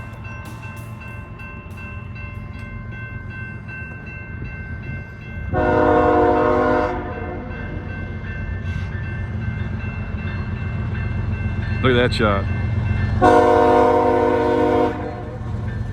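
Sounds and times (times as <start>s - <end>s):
train rumbling: 0.0s - 15.9s
train horn blast: 5.5s - 7.8s, 13.2s - 15.5s.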